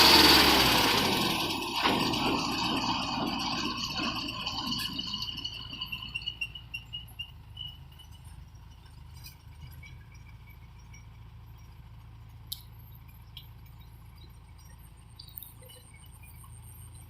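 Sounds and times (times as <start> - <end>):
distant engine rumble: 0.0 - 17.0
faint high chirps: 12.6 - 17.0.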